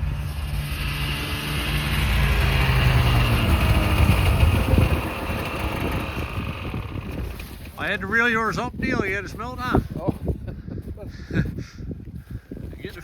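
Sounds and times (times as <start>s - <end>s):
engine running low: 0.0s - 8.4s.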